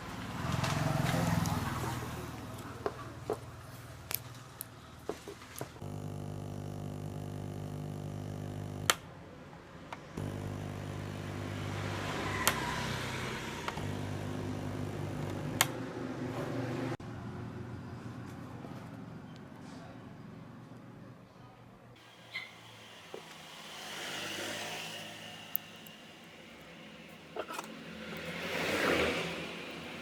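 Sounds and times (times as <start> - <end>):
electric motor humming: 5.8 - 8.9, 10.2 - 15.7, 22.0 - 30.0.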